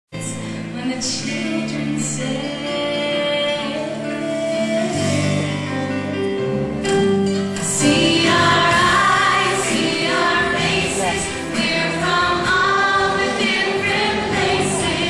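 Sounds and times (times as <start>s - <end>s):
instrumental backing: 0.3s - 15.0s
group of voices singing: 7.8s - 15.0s.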